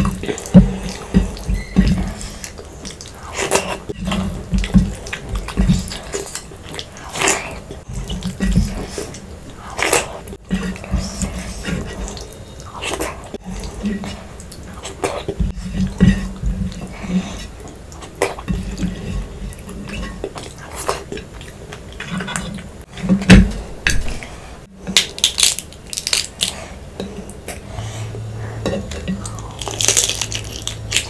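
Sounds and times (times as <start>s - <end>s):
wet chewing and smacking: 0.0s - 17.0s, 29.2s - 31.0s.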